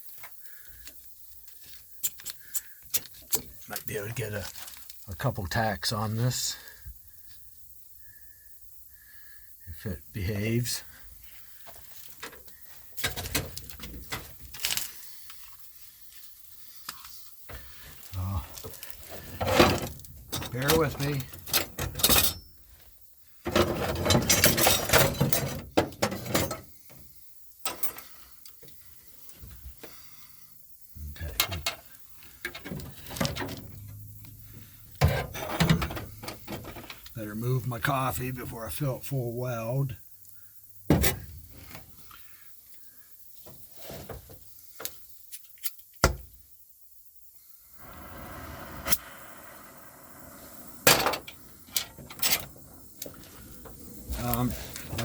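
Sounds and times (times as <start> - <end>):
tack welds crackling: 13.0 - 21.9, 47.8 - 55.0
metal tools clattering: 19.4 - 22.6, 23.6 - 26.7.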